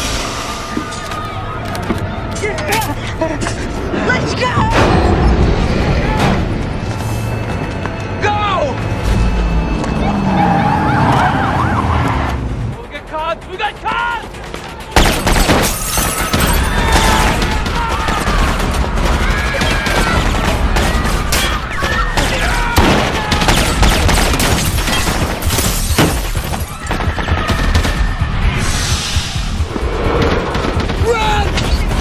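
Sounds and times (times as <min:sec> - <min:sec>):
rapid gunfire: 0:14.4 - 0:28.1, 0:30.2 - 0:32.0.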